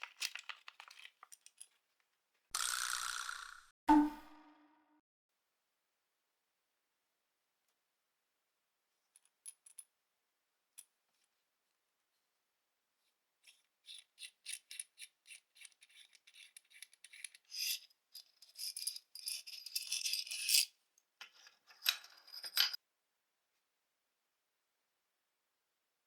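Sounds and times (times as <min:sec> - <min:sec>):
light clicks of small parts: 0:00.0 - 0:02.1.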